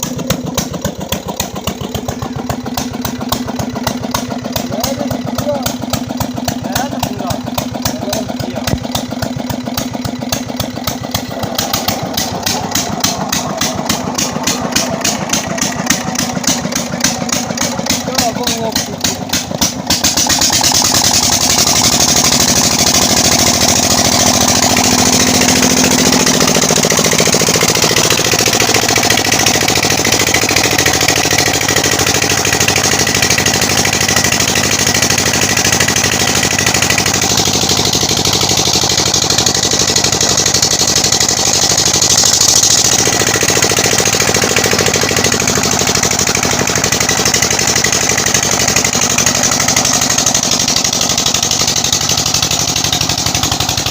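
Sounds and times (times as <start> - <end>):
diesel engine knocking steadily: 0.0 - 53.9.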